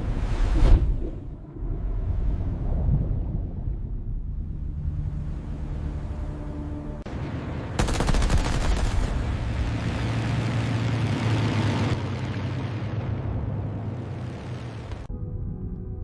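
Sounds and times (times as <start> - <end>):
steady low rumble: 0.0 - 16.0
automatic gunfire: 7.8 - 9.1.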